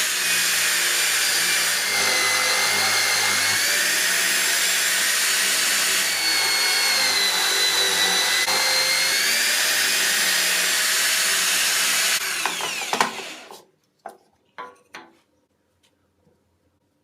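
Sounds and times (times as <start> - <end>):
electric drill running: 0.0 - 13.5.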